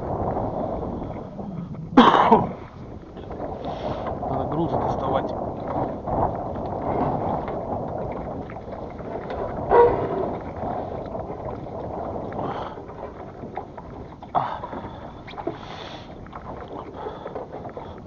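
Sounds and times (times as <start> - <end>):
water sounds: 0.0 - 18.0
weights knocking against hull: 1.7 - 18.0.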